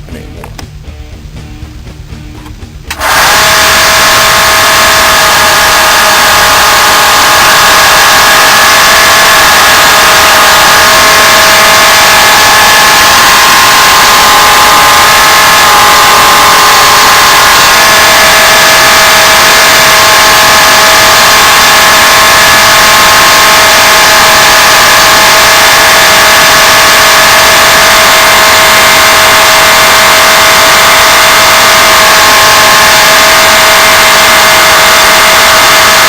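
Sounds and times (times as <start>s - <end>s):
electric sander grinding: 2.9s - 9.4s.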